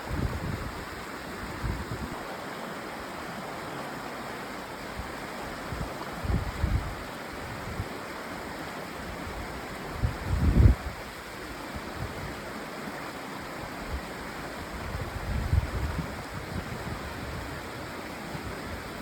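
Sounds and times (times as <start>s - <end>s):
wind buffeting microphone: 0.0s - 2.2s, 5.8s - 7.8s, 10.0s - 11.0s
flowing water rushing: 0.0s - 19.0s.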